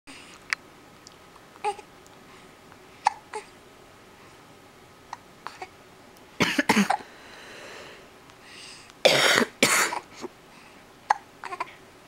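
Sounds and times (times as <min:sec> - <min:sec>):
breathy sounds: 0:06.9 - 0:09.0.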